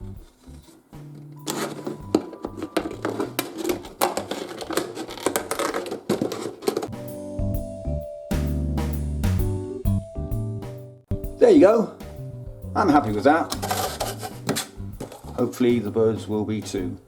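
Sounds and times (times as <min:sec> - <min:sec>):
plastic bottle crackling: 0:00.0 - 0:07.0, 0:13.0 - 0:15.6
quiet background music: 0:00.0 - 0:17.0.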